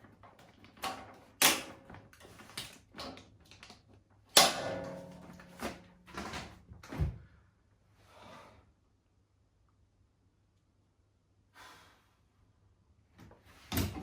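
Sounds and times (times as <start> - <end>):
metallic clang: 4.4 - 6.3
knocks and clunks of parts: 4.4 - 7.2.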